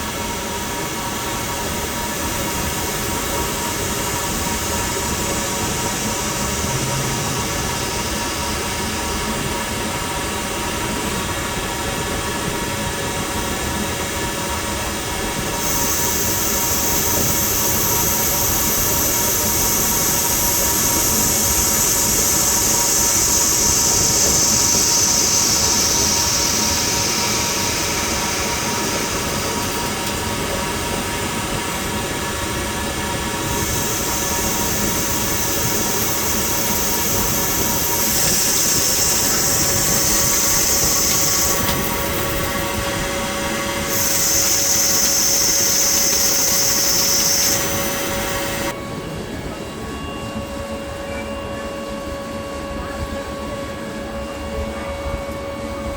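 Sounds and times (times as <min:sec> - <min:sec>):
lathe machine hum: 0:00.0 - 0:55.9
high hiss: 0:15.5 - 0:32.4, 0:33.1 - 0:48.7.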